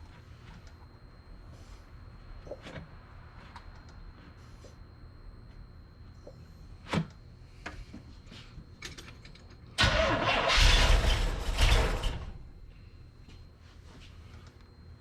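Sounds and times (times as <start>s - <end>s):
car engine cranking on starter: 9.8s - 12.5s.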